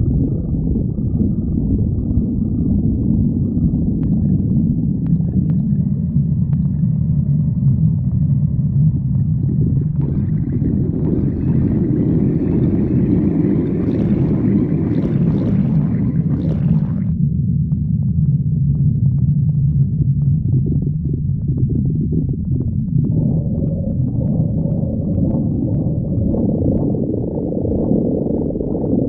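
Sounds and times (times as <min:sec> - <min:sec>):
stomach gurgling: 0:00.0 - 0:17.2, 0:18.0 - 0:29.0
stomach rumbling: 0:00.0 - 0:29.0.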